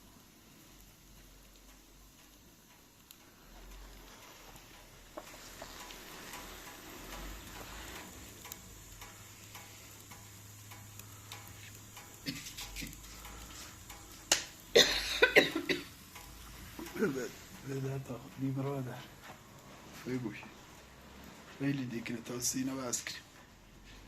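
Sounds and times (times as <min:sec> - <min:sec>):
faint hiss: 0:00.0 - 0:24.0
light clicks and taps: 0:01.5 - 0:14.7, 0:16.0 - 0:20.0.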